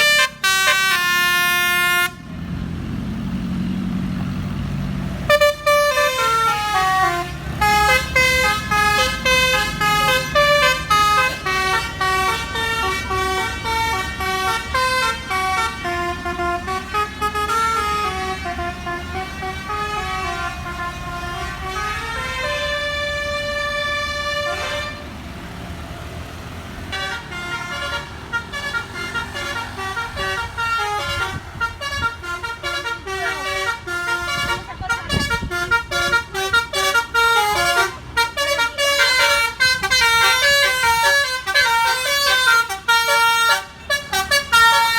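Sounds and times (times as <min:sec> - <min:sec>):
musical air horn tune: 0:00.0 - 0:02.2, 0:05.3 - 0:25.1, 0:26.9 - 0:44.9.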